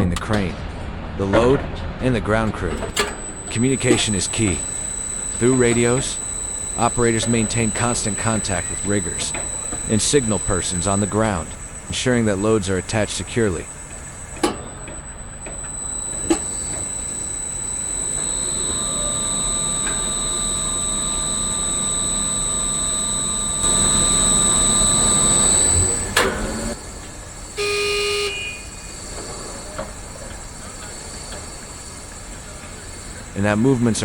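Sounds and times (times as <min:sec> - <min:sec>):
click: 0:00.1 - 0:00.5, 0:02.7 - 0:27.8, 0:28.5 - 0:34.0
crane machinery electric whine: 0:02.4 - 0:34.0
short horn blast: 0:27.6 - 0:28.7.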